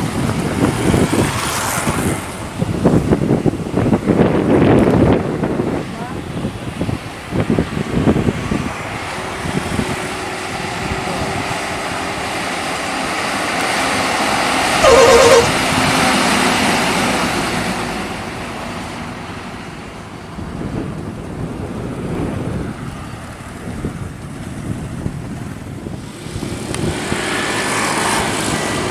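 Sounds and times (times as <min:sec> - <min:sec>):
bus passing: 0:00.0 - 0:28.9
musical bus horn warbling: 0:14.8 - 0:15.6.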